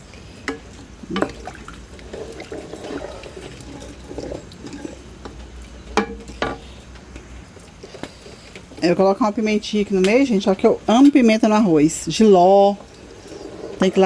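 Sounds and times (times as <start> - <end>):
water trickling and dripping: 0.0 - 7.8
kitchen utensils knocking: 5.9 - 6.7.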